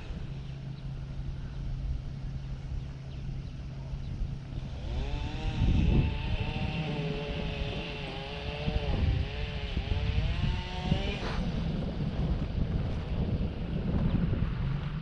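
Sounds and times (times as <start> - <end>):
motor humming: 0.0 - 14.9.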